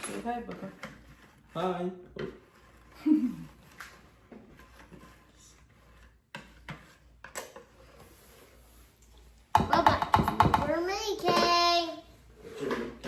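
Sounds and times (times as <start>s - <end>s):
kitchen utensils and dishes clinking: 0.0s - 1.1s.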